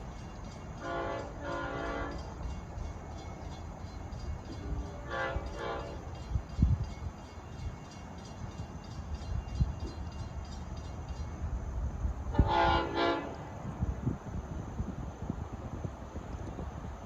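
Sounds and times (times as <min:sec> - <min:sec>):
diesel train rumble: 0:00.0 - 0:17.0
train horn blast: 0:00.8 - 0:02.3, 0:04.5 - 0:06.1, 0:12.3 - 0:13.5.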